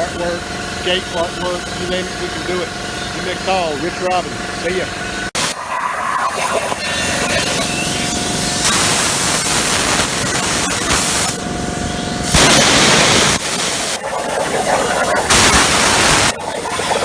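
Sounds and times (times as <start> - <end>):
plasma torch cutting steel: 5.4 - 17.0.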